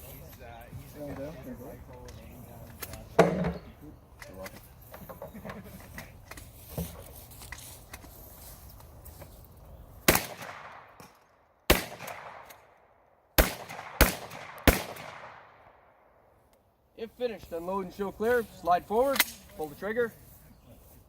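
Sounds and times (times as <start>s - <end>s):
shotgun shots echoing: 10.1s - 11.1s, 11.7s - 12.7s, 13.4s - 16.0s.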